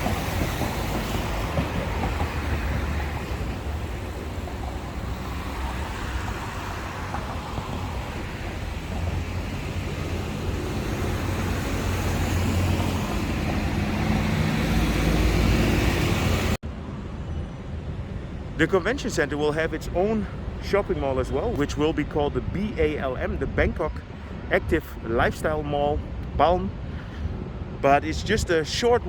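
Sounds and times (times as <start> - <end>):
engine hum: 0.0 - 18.6
passing cars rumbling: 0.0 - 29.0.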